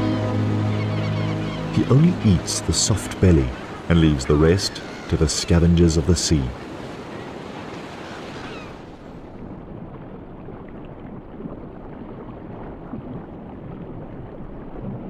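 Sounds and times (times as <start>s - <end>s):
sea water rumbling: 0.0s - 15.0s.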